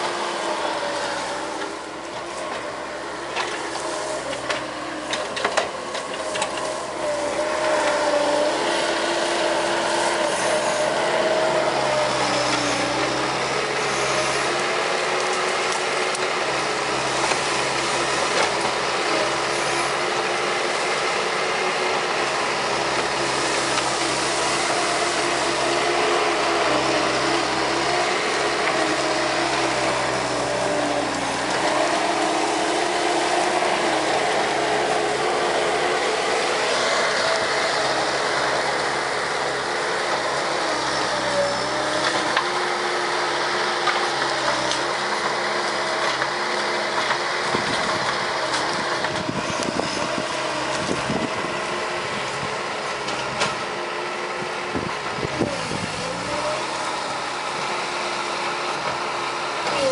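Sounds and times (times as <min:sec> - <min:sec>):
diesel engine running hard: 0:00.0 - 0:59.9.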